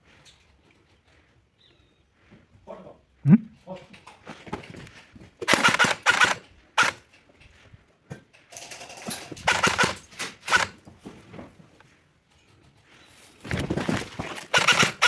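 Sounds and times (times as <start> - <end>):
airsoft rifle firing bursts: 5.4 - 7.0, 9.4 - 10.8, 14.4 - 15.0.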